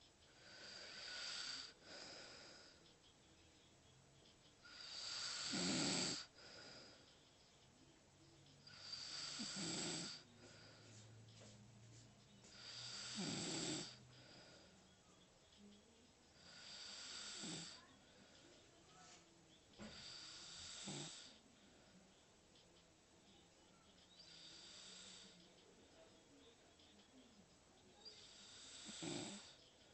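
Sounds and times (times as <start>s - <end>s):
hissing snores: 0.3s - 2.8s, 4.6s - 7.1s, 8.6s - 10.9s, 12.4s - 14.8s, 16.4s - 18.4s, 19.8s - 21.4s, 24.1s - 25.6s, 28.0s - 29.9s.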